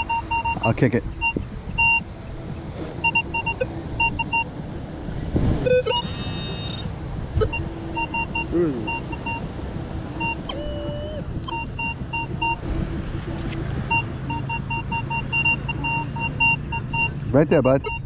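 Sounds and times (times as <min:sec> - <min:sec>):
metal detector beeping: 0:03.0 - 0:04.4, 0:05.6 - 0:09.4, 0:10.2 - 0:12.6.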